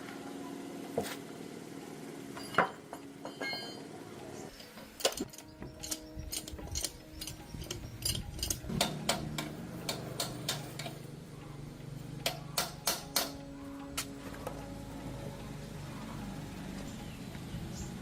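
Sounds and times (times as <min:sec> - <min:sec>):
metal tools clicking and tapping: 0:02.4 - 0:03.8, 0:04.5 - 0:14.7.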